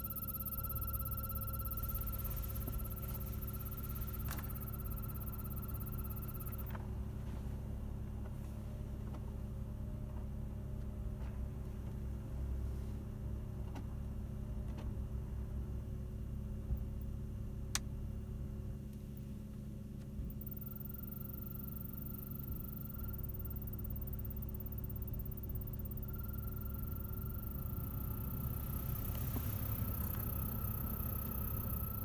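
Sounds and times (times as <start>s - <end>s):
blower fan humming: 0.0s - 7.4s, 20.3s - 32.0s.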